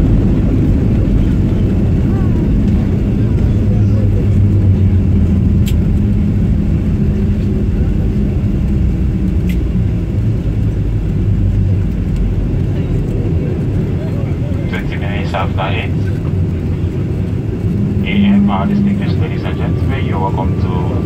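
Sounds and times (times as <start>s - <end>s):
airliner cabin rumble: 0.0s - 21.0s
jet engine drone: 0.0s - 21.0s.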